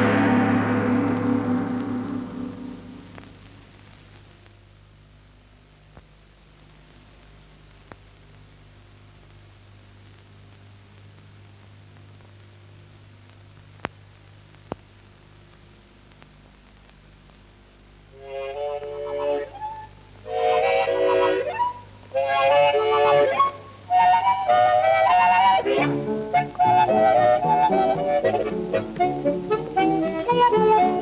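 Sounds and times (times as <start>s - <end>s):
gong ringing: 0.0s - 3.2s
film soundtrack hiss and hum: 0.0s - 31.0s.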